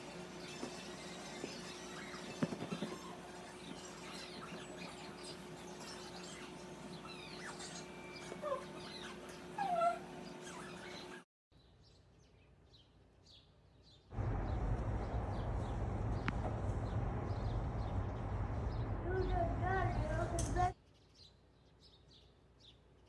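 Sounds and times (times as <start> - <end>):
small birds chirping: 0.0 - 14.1
short whining calls: 0.4 - 11.2
steady low rumble: 14.1 - 20.7.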